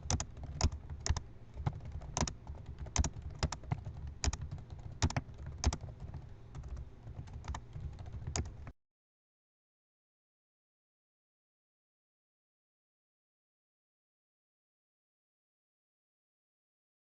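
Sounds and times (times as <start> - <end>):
fast typing on computer keyboard: 0.0 - 8.7.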